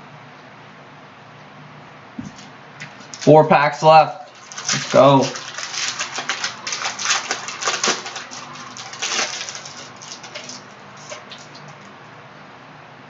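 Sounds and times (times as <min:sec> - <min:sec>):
card pack crinkling: 0:02.2 - 0:03.4, 0:04.2 - 0:11.8.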